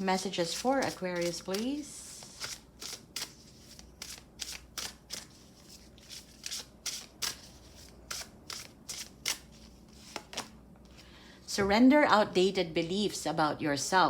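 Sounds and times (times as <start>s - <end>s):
cards shuffling: 0.4s - 11.0s.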